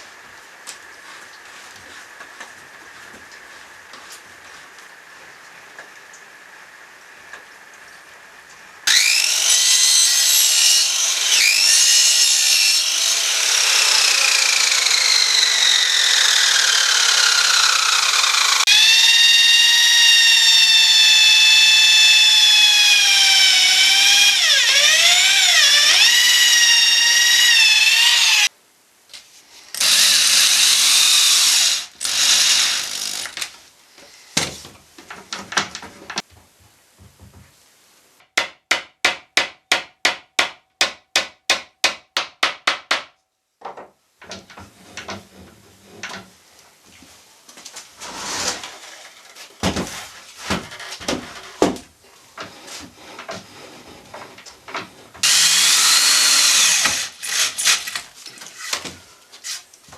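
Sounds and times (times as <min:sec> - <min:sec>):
power tool motor whining: 0:08.9 - 0:28.5, 0:29.8 - 0:33.5, 0:55.2 - 0:58.0.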